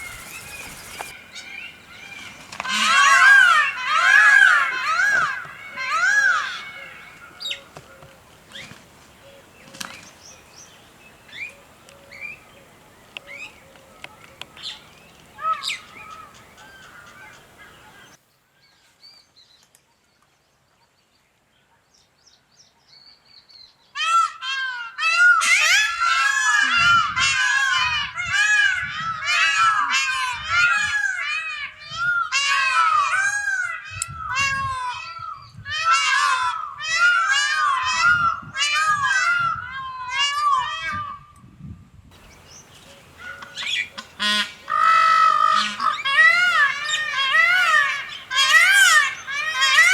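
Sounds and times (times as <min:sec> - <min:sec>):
flock of birds calling: 0:00.0 - 0:18.2, 0:42.1 - 0:49.9
small birds chirping: 0:00.0 - 0:18.2, 0:42.1 - 0:49.9.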